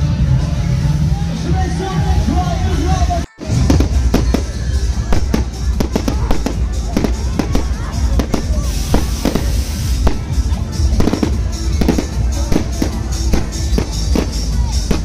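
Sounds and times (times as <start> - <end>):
fireworks bangs and crackles: 3.3 - 15.0
fireworks hissing rush: 3.3 - 15.0.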